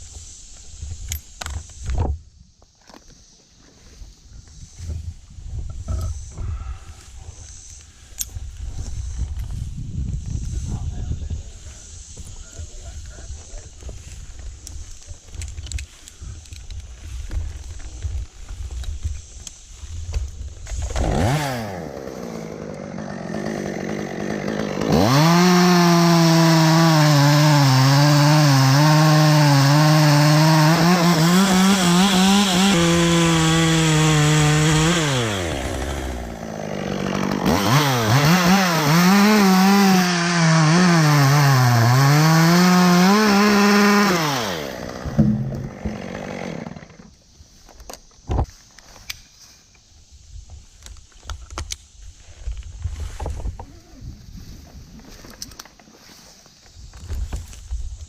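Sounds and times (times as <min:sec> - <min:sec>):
chainsaw cutting wood: 0:20.6 - 0:47.2.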